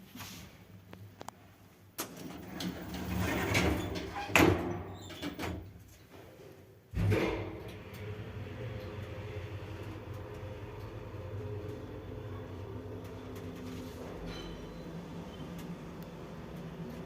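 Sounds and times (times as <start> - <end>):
lift car rumble: 2.0 - 5.6, 7.0 - 17.0
lift drive hum: 7.0 - 17.0.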